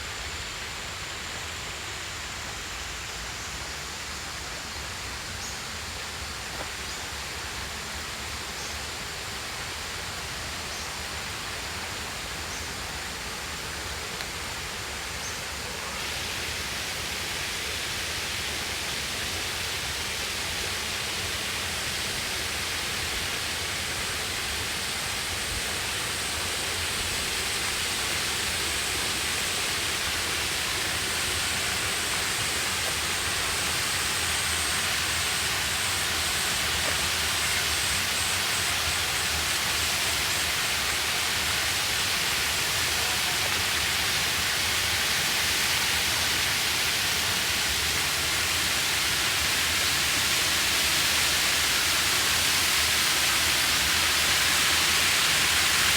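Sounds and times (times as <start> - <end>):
waterfall rushing: 11.3 - 55.9.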